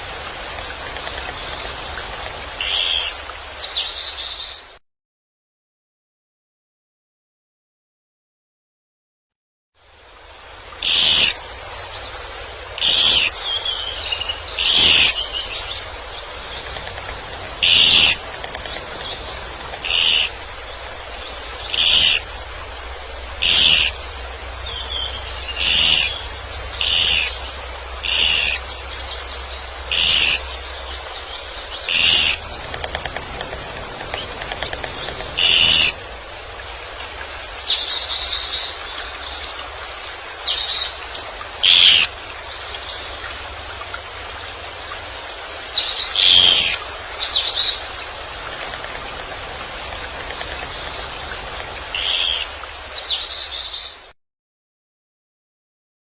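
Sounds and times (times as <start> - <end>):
woodpecker calling: 2.6 - 3.2, 10.8 - 11.4, 12.8 - 22.4, 23.3 - 36.1, 41.6 - 42.2, 45.7 - 52.5
faint bird chirping: 12.8 - 22.3, 23.4 - 36.0, 37.3 - 43.3, 45.4 - 54.0.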